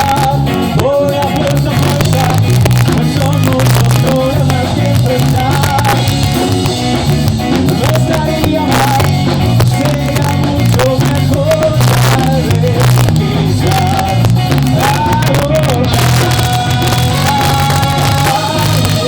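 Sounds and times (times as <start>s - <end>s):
bass line: 0.0s - 19.0s
drum kit beat: 0.0s - 19.0s
live ska band playing: 0.0s - 19.0s.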